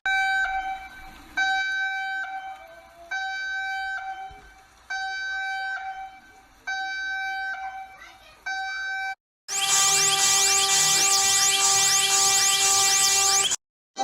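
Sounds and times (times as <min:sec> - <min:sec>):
buzzy electronic alarm beeps: 0:09.5 - 0:13.6.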